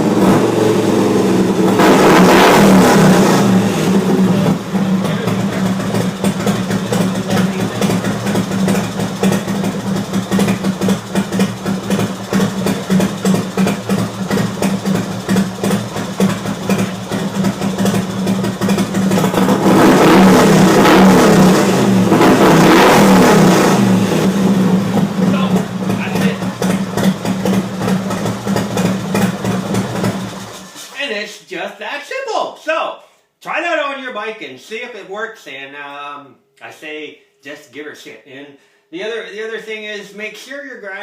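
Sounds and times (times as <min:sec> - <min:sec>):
motorcycle engine idling: 0:03.6 - 0:19.5, 0:23.8 - 0:30.6.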